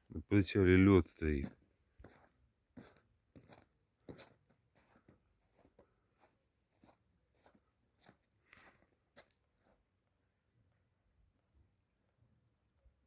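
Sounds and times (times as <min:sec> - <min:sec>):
faint crunching footsteps: 0:00.3 - 0:09.8.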